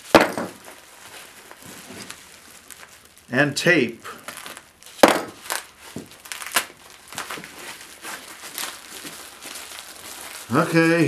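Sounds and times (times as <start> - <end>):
plastic packing crinkling: 0.0 - 11.0
sharp crack: 4.0 - 7.5.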